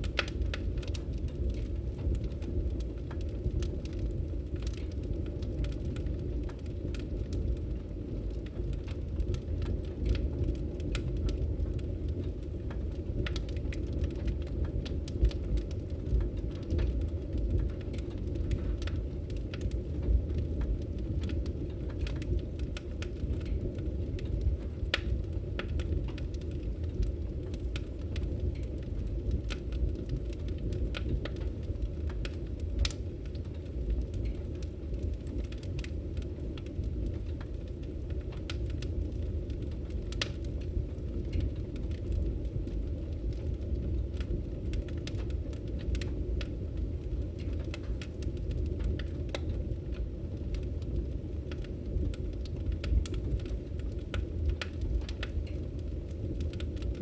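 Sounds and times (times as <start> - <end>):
wood fire crackling and popping: 0.0 - 57.0.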